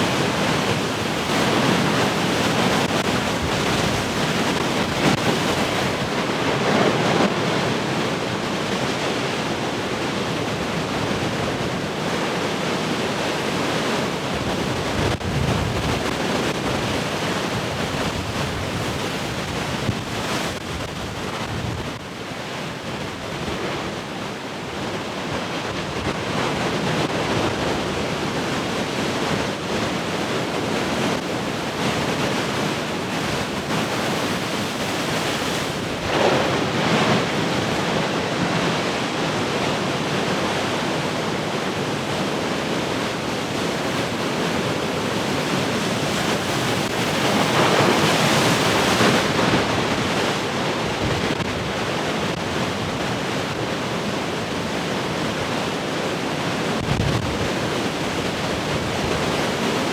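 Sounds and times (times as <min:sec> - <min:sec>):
ocean waves breaking: 0:00.0 - 0:59.9
wind buffeting microphone: 0:24.8 - 0:39.7, 0:56.6 - 0:59.9.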